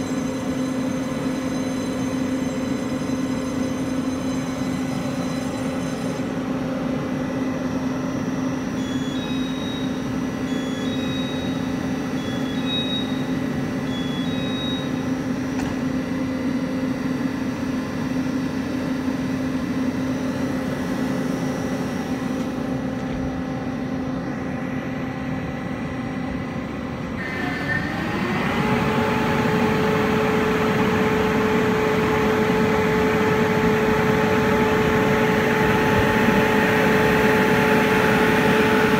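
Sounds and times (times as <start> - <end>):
machine hum rising in pitch: 0.0 - 38.9
train electrical hum: 0.0 - 38.9
faint high beeps: 8.7 - 15.2.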